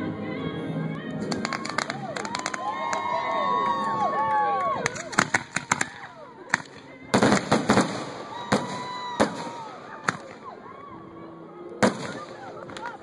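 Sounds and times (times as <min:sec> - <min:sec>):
fireworks bangs and crackles: 0:01.2 - 0:03.2, 0:04.9 - 0:10.5, 0:11.8 - 0:12.9.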